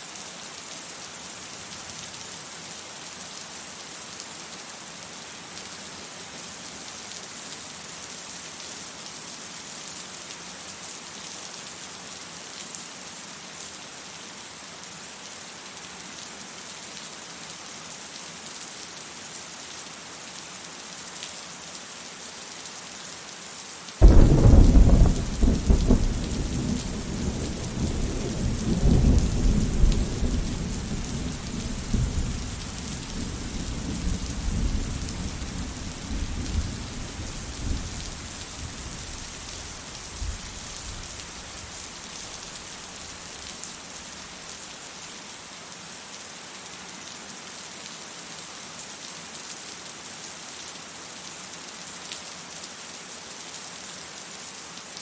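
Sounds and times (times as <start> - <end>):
thunder crack and rumble: 24.0 - 38.8
rain hissing: 24.0 - 44.7.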